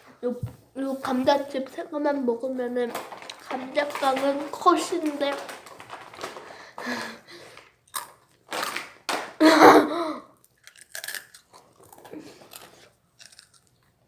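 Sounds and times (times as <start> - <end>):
potato chips crunching: 2.9 - 9.4, 10.4 - 14.0.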